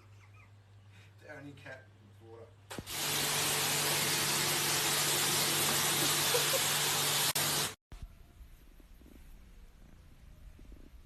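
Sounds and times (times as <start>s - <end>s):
faint low hum: 7.9s - 11.0s.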